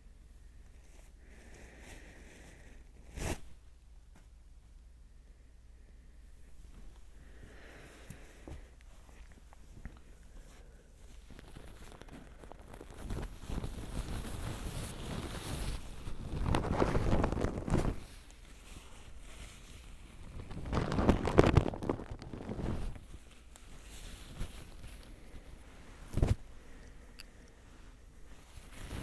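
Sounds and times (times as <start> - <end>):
soft rustle: 0.0 - 29.0
scratchy rubbing at microphone: 10.4 - 26.6, 27.8 - 29.0.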